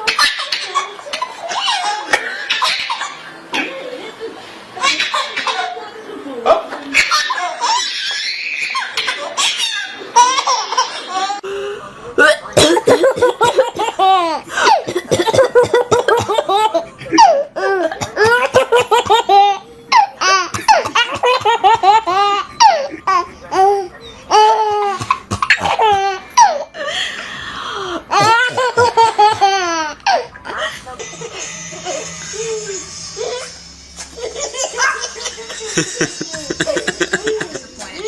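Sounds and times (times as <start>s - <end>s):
baby laughing: 0.0s - 3.8s, 7.0s - 11.4s, 12.9s - 26.7s, 28.1s - 30.7s, 34.2s - 37.8s.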